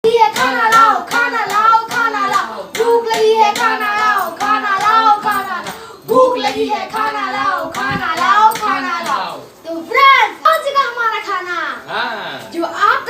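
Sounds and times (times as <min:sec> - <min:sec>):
handclaps beat: 0:00.3 - 0:05.8.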